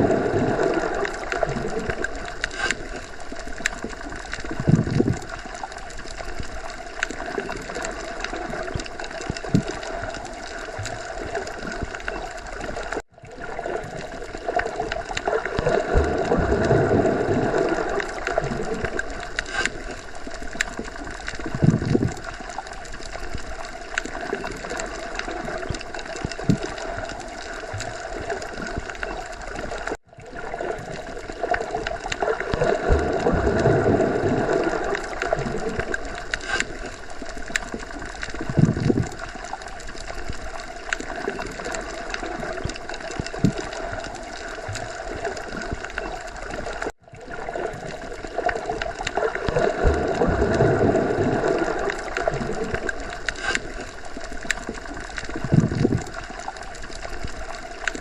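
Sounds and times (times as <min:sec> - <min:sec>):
bubbling and gurgling: 0:00.0 - 0:58.0
low water swells: 0:00.0 - 0:58.0
small ticks: 0:18.2 - 0:22.3, 0:35.8 - 0:43.9.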